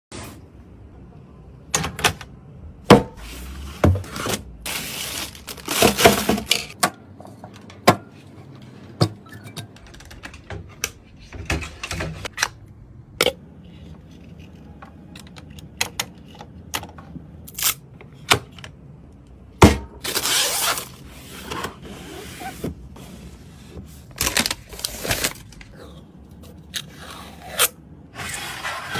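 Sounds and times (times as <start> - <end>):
computer parts clicking and knocking: 9.0 - 12.4.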